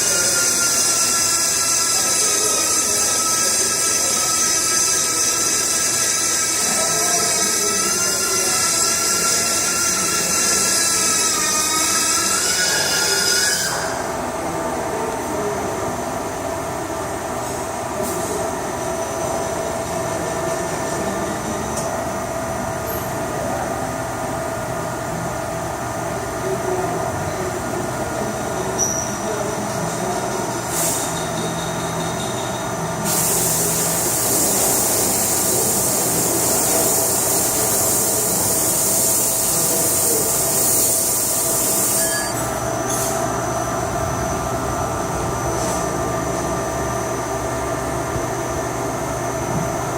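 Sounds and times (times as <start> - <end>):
machine axis drives whining: 0.0 - 14.1
loud high hiss: 33.0 - 43.2.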